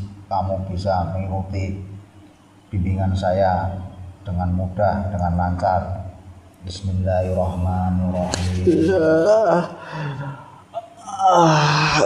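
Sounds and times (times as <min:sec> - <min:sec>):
person's wavering drawn-out voice: 0:08.7 - 0:09.8, 0:10.8 - 0:12.0.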